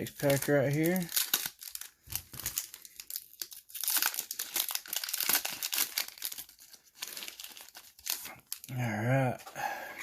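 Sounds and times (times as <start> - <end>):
foil wrapper crinkling and tearing: 0.0 - 9.2.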